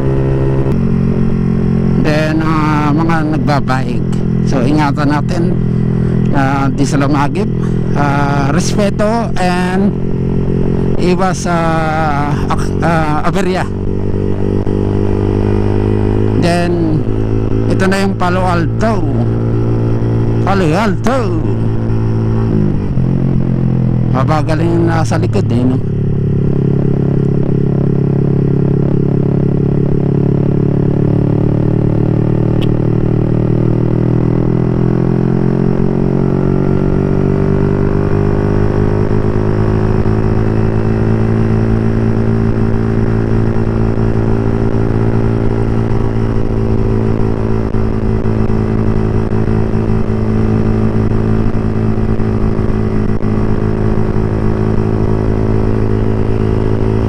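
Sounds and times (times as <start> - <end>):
motorcycle engine cruising: 0.0 - 57.0.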